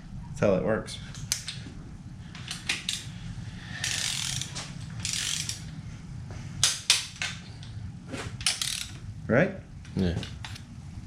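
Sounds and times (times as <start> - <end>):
torque wrench ratchet clicking: 3.8 - 5.7, 8.4 - 9.0.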